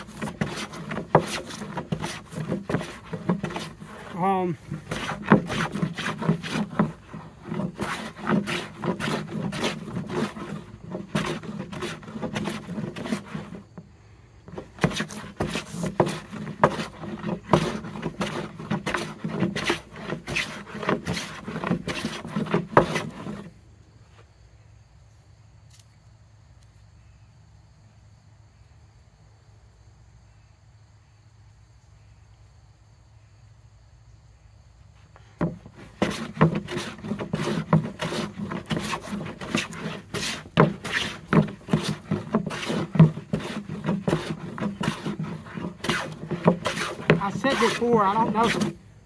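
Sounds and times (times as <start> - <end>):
hand plane shaving wood: 0.0 - 13.8, 14.5 - 23.5, 35.4 - 48.9.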